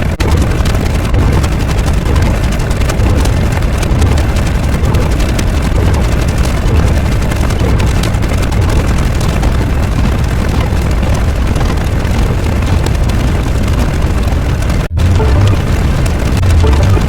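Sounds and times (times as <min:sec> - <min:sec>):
deep bass rumbling: 0:00.0 - 0:17.0.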